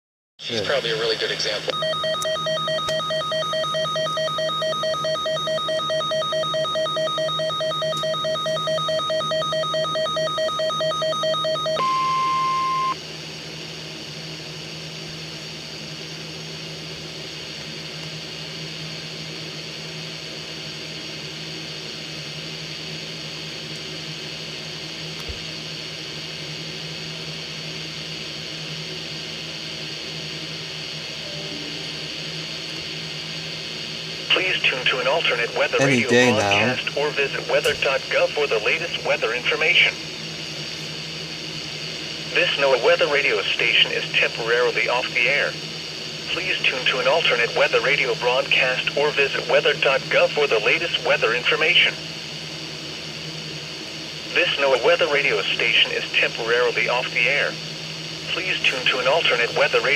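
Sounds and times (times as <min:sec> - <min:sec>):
steady beep: 0:01.7 - 0:13.0
radio hiss: 0:34.3 - 0:40.0, 0:54.4 - 0:57.6, 0:58.3 - 0:59.9.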